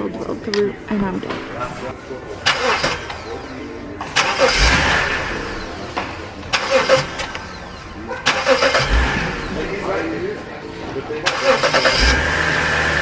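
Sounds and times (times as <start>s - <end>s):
car engine cranking and starting: 1.4s - 13.0s
engine revving surges: 2.4s - 10.3s, 11.2s - 13.0s.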